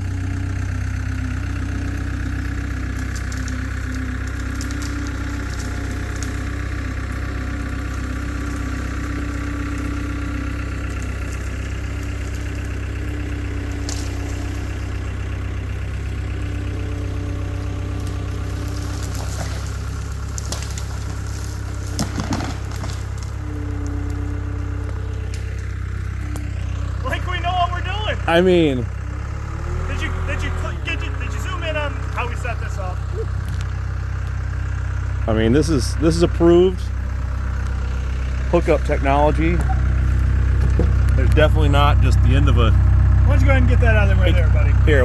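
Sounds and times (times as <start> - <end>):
diesel engine running: 0.0 - 45.0
short sharp cracks: 18.0 - 23.9.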